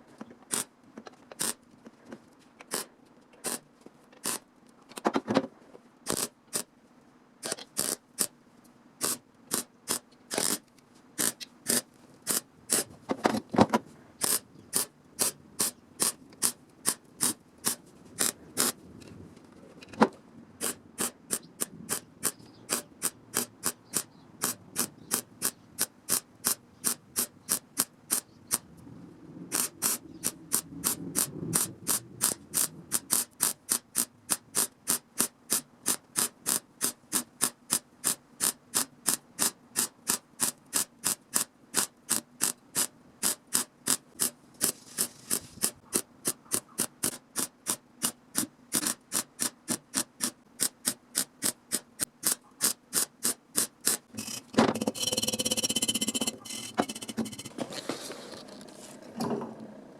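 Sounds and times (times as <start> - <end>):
continuous hissing: 0.0 - 59.9
hand tool strokes on metal: 42.4 - 47.2, 52.6 - 59.0.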